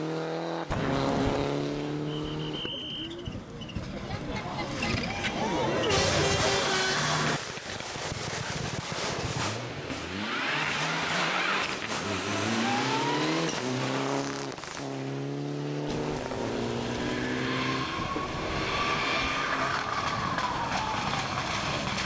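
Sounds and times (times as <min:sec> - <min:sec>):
rally car engine accelerating: 0:00.0 - 0:02.7, 0:08.0 - 0:22.0.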